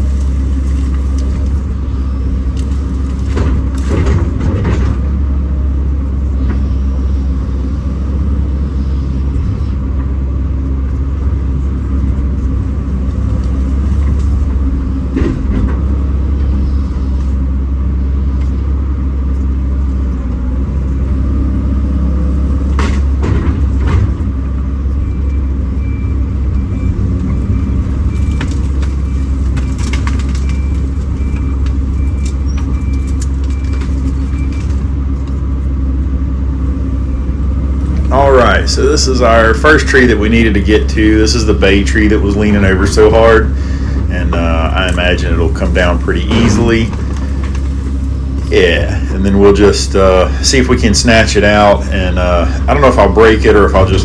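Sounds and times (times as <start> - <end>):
excavator diesel engine running: 0.0 - 54.0
sharp knocks and clanks: 2.5 - 5.4, 12.8 - 17.3, 22.4 - 35.4, 40.9 - 49.2.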